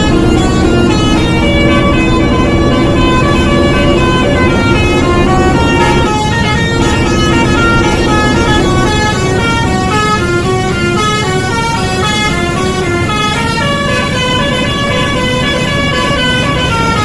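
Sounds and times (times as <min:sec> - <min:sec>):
low rumble: 0:00.0 - 0:11.2
multi-tone bus horn melody: 0:00.0 - 0:17.0.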